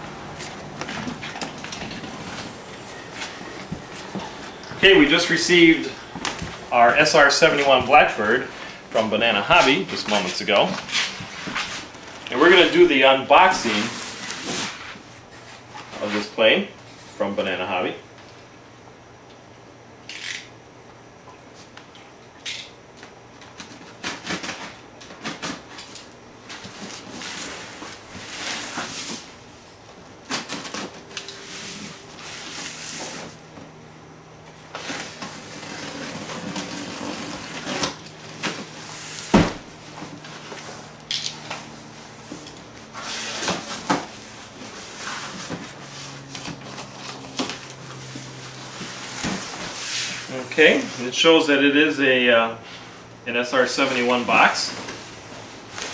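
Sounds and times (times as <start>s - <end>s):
cardboard rustling and scraping: 0.2s - 16.3s, 26.4s - 29.4s, 30.3s - 33.7s, 34.6s - 41.0s, 41.6s - 51.1s, 53.8s - 55.9s.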